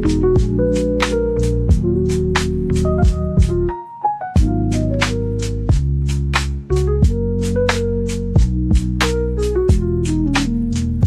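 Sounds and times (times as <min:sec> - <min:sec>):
steady drum beat: 0:00.0 - 0:03.7, 0:04.4 - 0:11.0
melody of held notes: 0:00.0 - 0:05.8.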